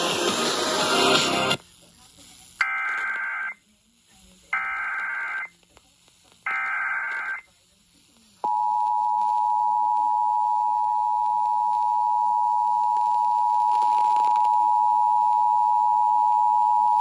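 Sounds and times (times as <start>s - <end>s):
digital data bursts: 0.0s - 5.6s, 6.4s - 7.6s.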